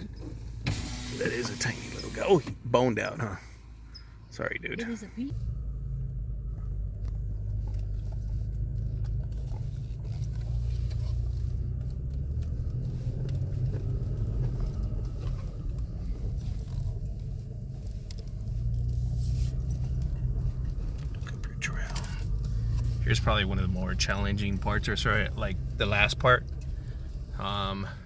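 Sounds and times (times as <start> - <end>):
vehicle engine low rumble: 0.0 - 28.0.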